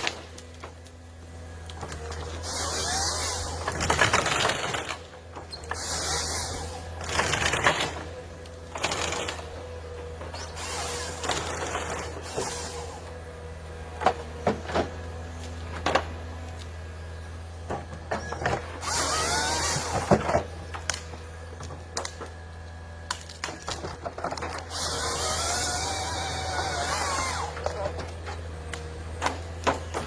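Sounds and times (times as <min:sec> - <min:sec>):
harvester engine humming: 0:00.0 - 0:30.0
harsh cutting noise: 0:01.9 - 0:13.1, 0:18.8 - 0:20.3, 0:24.4 - 0:30.0.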